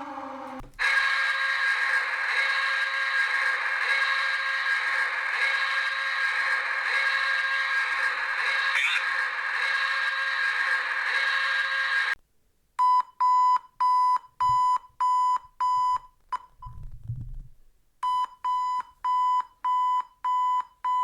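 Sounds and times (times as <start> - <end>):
harsh buzzy alarm tone: 0.0 - 12.2.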